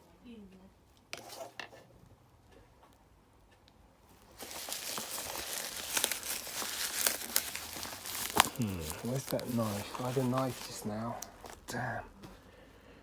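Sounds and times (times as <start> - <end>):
packaging crinkling and rustling: 4.1 - 12.4
packaging clicks: 4.2 - 11.9.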